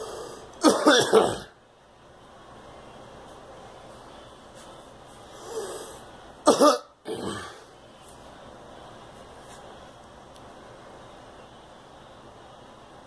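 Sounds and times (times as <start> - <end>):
girl coughing: 0.6 - 1.5, 6.5 - 7.3.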